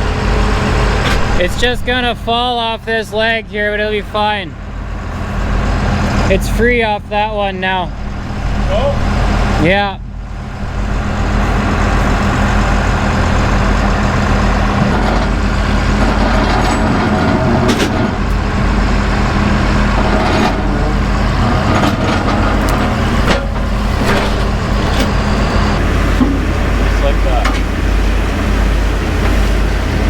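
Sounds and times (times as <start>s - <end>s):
diesel engine running under load: 0.0s - 30.0s
metal clanks: 13.9s - 27.8s.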